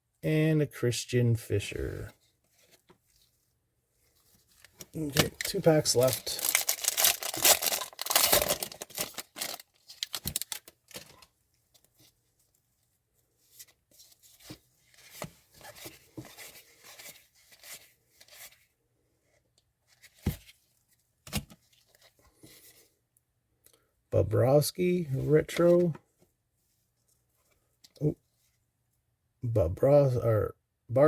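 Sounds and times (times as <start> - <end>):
cards rustling and clicking: 4.3 - 11.3
wrapper tearing and crinkling: 5.0 - 11.1.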